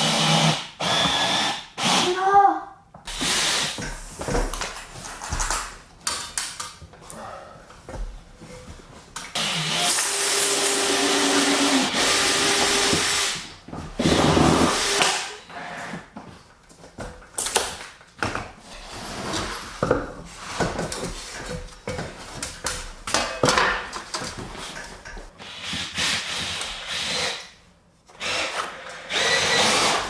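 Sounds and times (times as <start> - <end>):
power drill running: 0.0 - 2.1, 3.1 - 3.8, 9.4 - 15.8, 25.4 - 27.5, 28.1 - 30.0.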